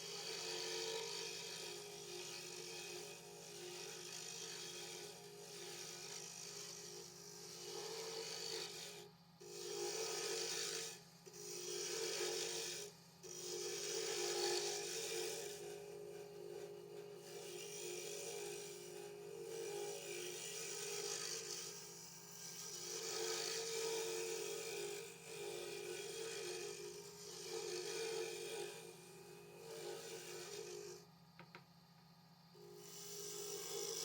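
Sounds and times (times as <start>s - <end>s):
tool rasping against spinning wood: 0.0s - 31.1s, 32.7s - 34.0s
wood lathe humming: 0.1s - 31.6s, 32.6s - 34.0s.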